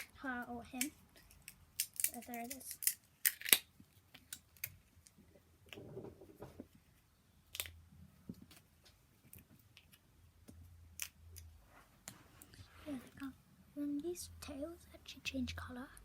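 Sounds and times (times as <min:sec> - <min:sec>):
plastic toy pieces clicking: 0:00.8 - 0:04.8.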